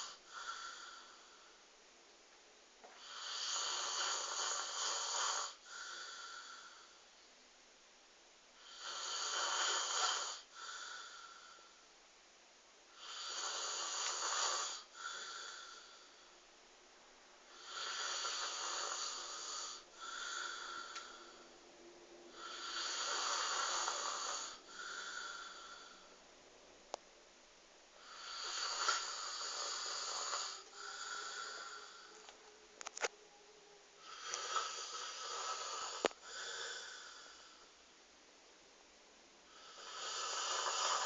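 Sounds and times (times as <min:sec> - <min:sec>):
man snoring: 0:00.0 - 0:01.4, 0:03.0 - 0:07.0, 0:08.6 - 0:11.7, 0:13.0 - 0:16.2, 0:17.5 - 0:21.4, 0:22.3 - 0:26.1, 0:28.0 - 0:32.2, 0:34.0 - 0:37.7, 0:39.5 - 0:41.0.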